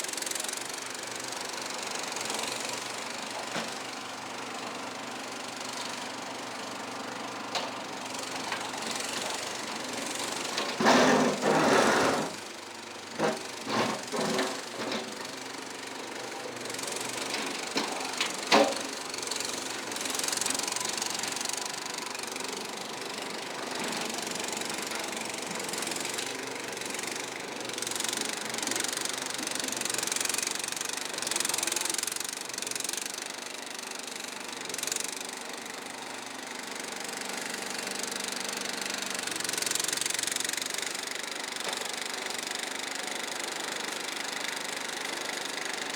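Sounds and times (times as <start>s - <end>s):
bulldozer engine running: 0.1s - 33.4s.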